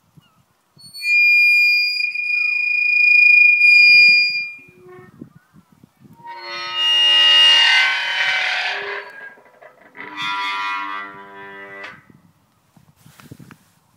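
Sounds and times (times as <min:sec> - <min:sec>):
long squeaks: 0:00.8 - 0:05.2, 0:06.1 - 0:12.0.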